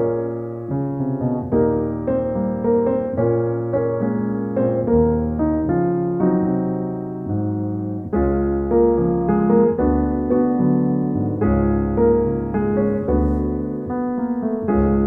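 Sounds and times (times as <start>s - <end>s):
electric piano chords: 0.0s - 15.0s
low bass line: 4.2s - 15.0s.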